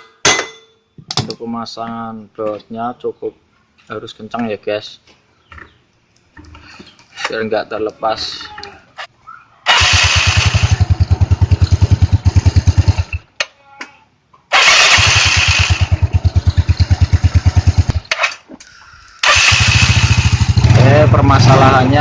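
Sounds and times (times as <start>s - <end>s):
scooter starter cranking engine: 9.7s - 13.2s, 14.5s - 18.4s, 19.1s - 22.0s.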